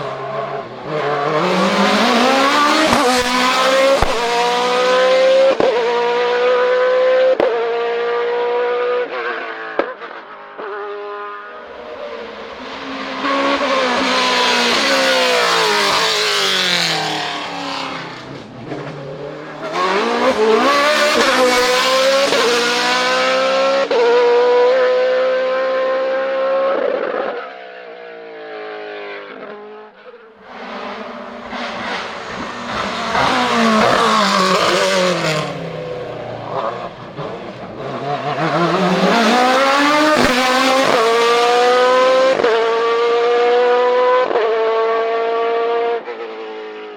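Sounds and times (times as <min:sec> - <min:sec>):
race car engines at full throttle: 0:00.0 - 0:46.9.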